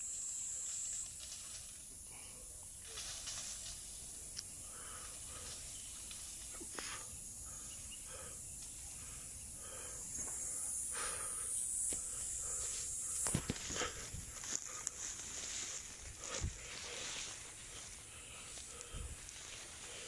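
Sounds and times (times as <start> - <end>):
high-pitched insect chorus: 0.0 - 20.0
faint rustling: 2.8 - 7.0, 11.8 - 20.0.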